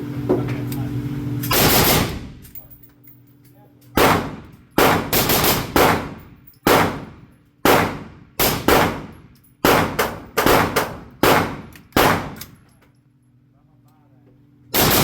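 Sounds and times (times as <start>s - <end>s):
gunshots: 1.5s - 2.4s, 4.0s - 12.4s, 14.8s - 15.0s.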